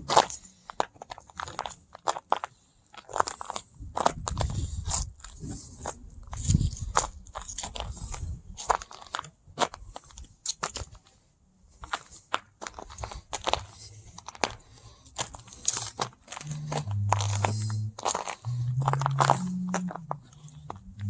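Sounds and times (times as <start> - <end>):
frozen dirt crunching: 0.0 - 21.0
low hum changing pitch: 16.4 - 21.0.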